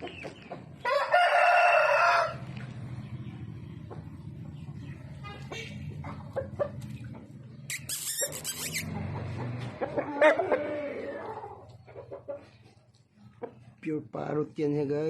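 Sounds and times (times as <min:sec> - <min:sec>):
parrot screeching: 0:07.7 - 0:08.9.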